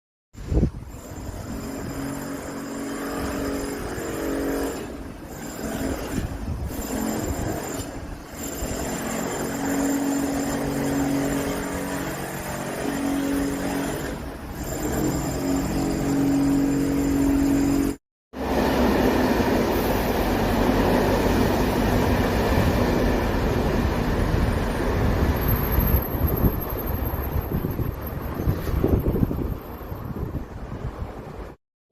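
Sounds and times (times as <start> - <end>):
road noise: 0.4 - 31.6
engines humming in traffic: 7.3 - 31.6
vehicle rumbling in motion: 14.2 - 31.6.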